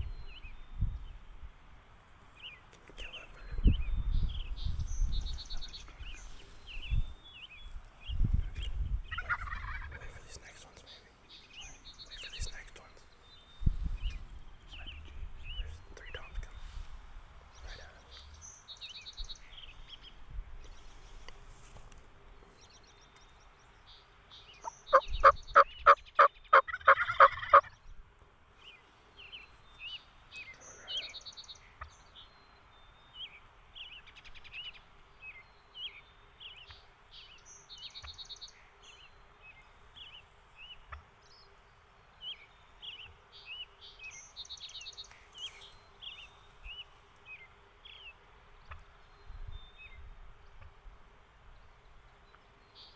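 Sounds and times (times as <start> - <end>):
songbird chirps: 0.0 - 52.9
turkey gobbling: 9.2 - 10.0, 24.9 - 27.7.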